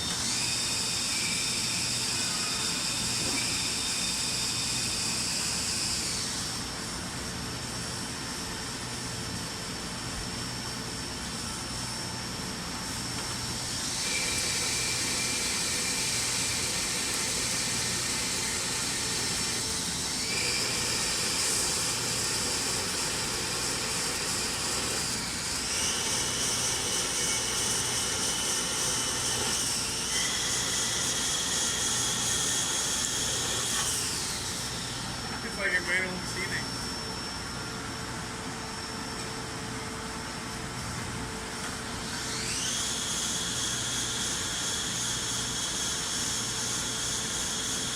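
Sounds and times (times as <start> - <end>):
steady machine noise: 0.0 - 39.1
high machine whine: 0.0 - 47.9
hiss: 13.7 - 34.9, 42.3 - 47.9.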